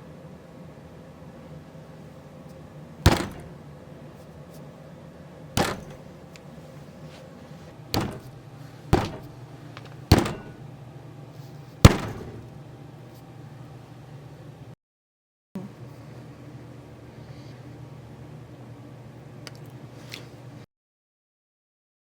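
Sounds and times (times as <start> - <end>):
sharp knocks: 3.1 - 3.6, 5.6 - 6.1, 8.0 - 8.4, 9.0 - 10.7, 11.9 - 12.6.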